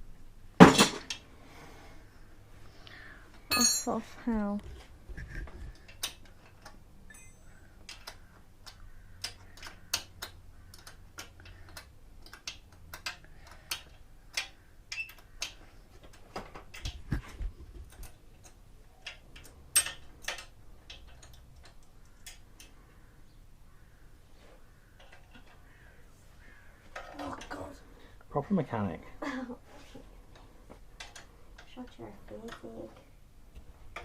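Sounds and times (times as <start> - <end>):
hand tools clicking on bolts: 5.8 - 17.2, 17.8 - 22.8.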